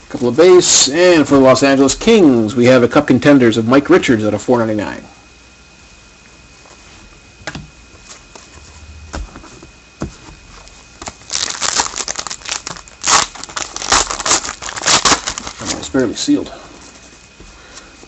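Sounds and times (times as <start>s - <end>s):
foil wrapper crinkling and tearing: 10.6s - 16.1s.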